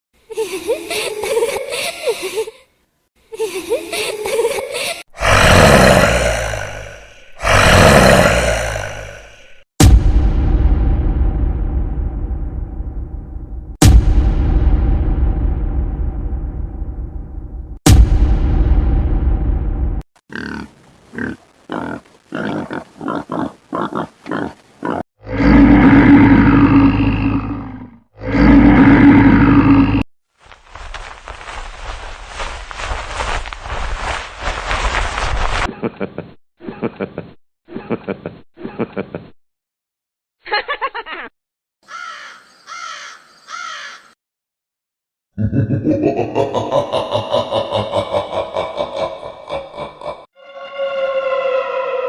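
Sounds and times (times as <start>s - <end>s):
animal grunts: 5.2s - 9.4s
loud animal roars: 5.2s - 9.5s, 24.3s - 30.1s, 48.8s - 52.0s
crow cawing: 41.8s - 44.2s.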